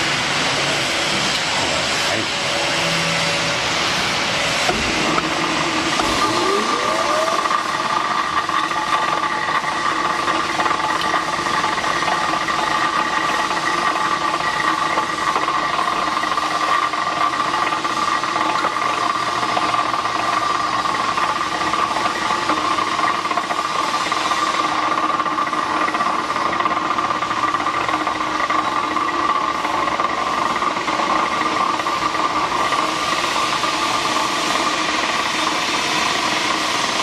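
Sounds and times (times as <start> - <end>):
cutting machine humming: 0.0 - 17.4.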